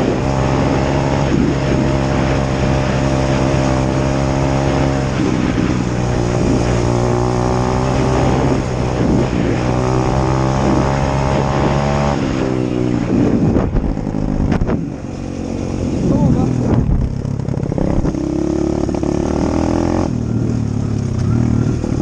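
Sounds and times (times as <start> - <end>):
dirt bike engine running: 0.0 - 22.0.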